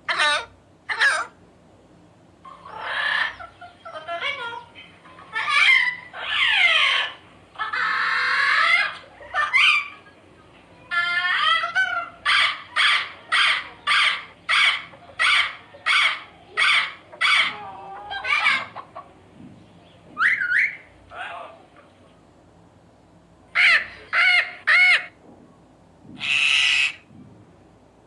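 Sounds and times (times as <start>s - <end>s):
macaw screeching and squawking: 0.1s - 1.4s, 2.5s - 10.0s, 10.9s - 18.8s, 20.2s - 21.5s, 23.6s - 25.2s, 26.2s - 27.1s.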